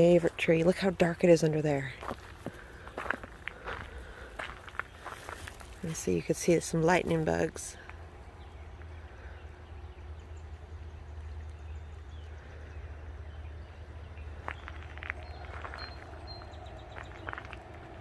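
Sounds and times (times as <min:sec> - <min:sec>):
footsteps crunching on ground: 0:00.0 - 0:08.0, 0:14.3 - 0:18.0
low outdoor rumble: 0:00.0 - 0:18.0.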